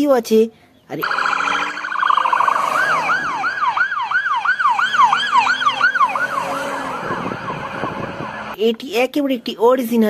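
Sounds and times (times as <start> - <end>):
toy electronic siren wailing: 1.0 - 8.6.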